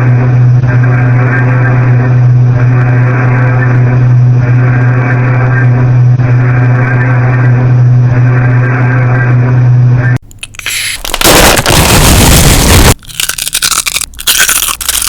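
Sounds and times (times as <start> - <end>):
low buzzing alarm drone: 0.0 - 13.0
harsh static noise: 0.0 - 15.0
choppy electronic bursts: 10.5 - 14.7.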